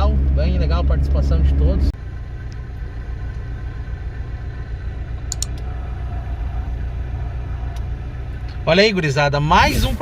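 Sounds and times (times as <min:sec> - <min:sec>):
car engine and road rumble: 0:00.0 - 0:10.0
faint short clicks: 0:05.3 - 0:05.6.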